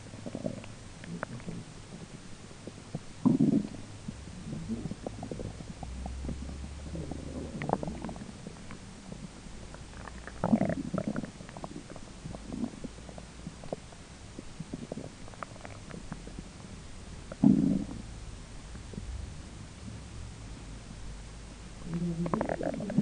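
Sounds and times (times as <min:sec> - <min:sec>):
belly gurgling: 0:03.2 - 0:13.8, 0:21.8 - 0:23.0.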